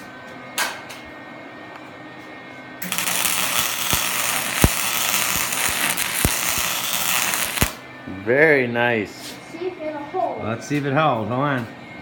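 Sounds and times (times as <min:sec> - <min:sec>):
spatter pops: 0:02.8 - 0:07.8
welding arc crackling hiss: 0:02.8 - 0:07.8.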